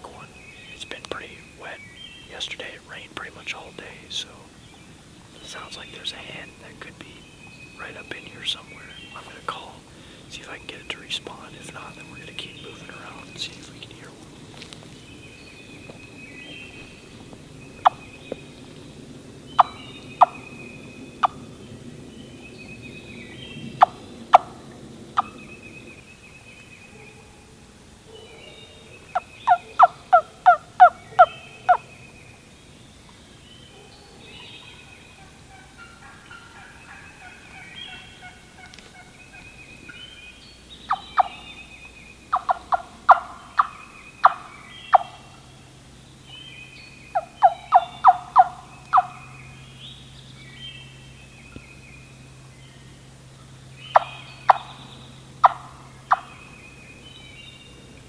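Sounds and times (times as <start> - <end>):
songbirds singing: 0.0 - 58.0
turkey call clucks and yelps: 29.2 - 31.8, 42.3 - 45.2, 47.2 - 49.2, 55.4 - 56.4.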